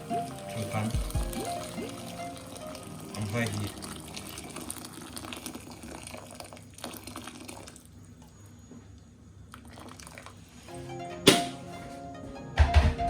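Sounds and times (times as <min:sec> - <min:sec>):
water pouring into a pan: 0:00.4 - 0:08.0, 0:09.6 - 0:10.4.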